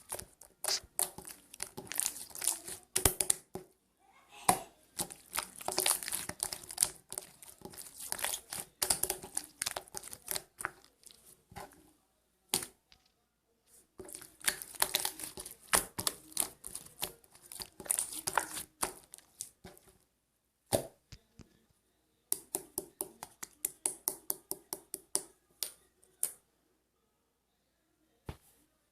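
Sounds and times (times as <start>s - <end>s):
slime crackling and popping: 0.0s - 3.5s, 5.0s - 11.2s, 14.0s - 19.6s.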